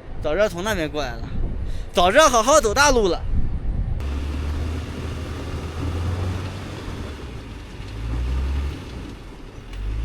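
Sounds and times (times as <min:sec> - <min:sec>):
suv engine revving: 0:04.0 - 0:10.0.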